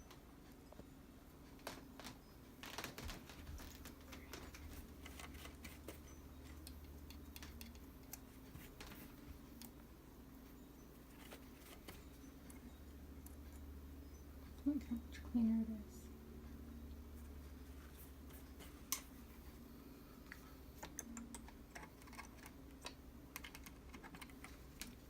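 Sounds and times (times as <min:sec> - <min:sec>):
small clicks and scratching: 0:00.0 - 0:09.8, 0:11.0 - 0:13.7, 0:20.3 - 0:25.0
steady low hum: 0:00.0 - 0:25.0.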